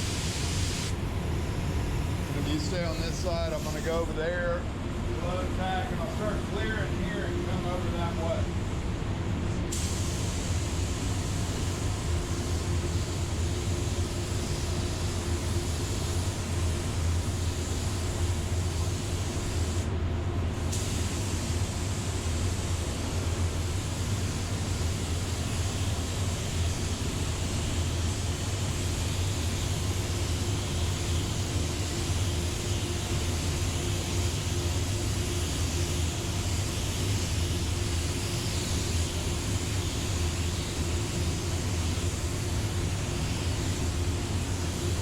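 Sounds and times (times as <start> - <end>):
paint spray gun hissing: 0.0 - 1.0, 9.7 - 19.9, 20.6 - 45.0
steady low hum: 0.0 - 45.0.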